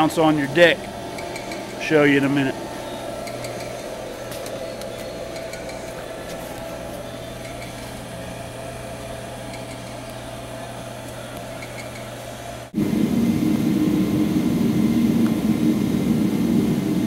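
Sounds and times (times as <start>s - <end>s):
high whine: 0.0s - 17.0s
machine humming: 0.0s - 17.0s.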